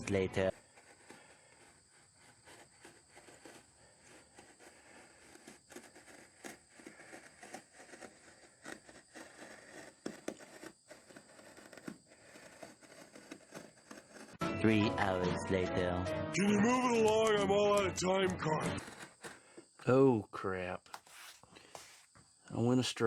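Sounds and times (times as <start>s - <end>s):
blade cutting through foam: 0.0s - 14.4s, 18.1s - 20.0s.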